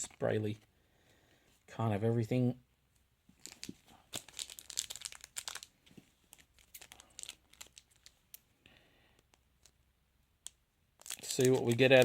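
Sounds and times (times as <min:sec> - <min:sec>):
foil packet crinkling and tearing: 0:03.4 - 0:05.7, 0:06.3 - 0:08.2, 0:10.4 - 0:12.0.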